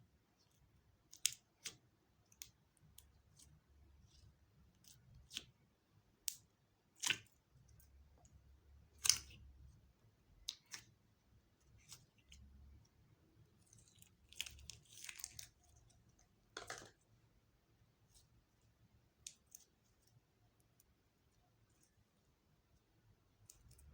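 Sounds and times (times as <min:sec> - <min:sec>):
slime squishing with sticky pops: 0:10.4 - 0:11.0.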